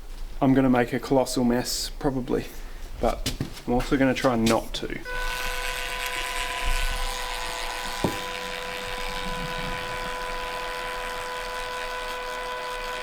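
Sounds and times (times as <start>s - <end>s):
electric motor humming: 5.1s - 13.0s.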